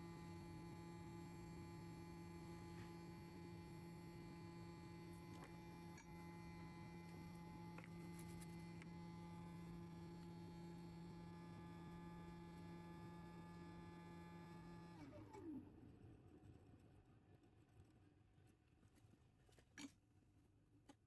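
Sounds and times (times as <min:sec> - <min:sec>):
low electrical hum: 0:00.0 - 0:21.0.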